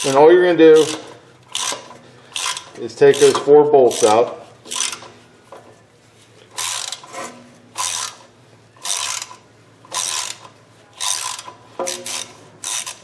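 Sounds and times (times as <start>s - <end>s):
ratchet clicking: 0.0s - 5.1s, 6.5s - 7.2s, 7.8s - 13.0s.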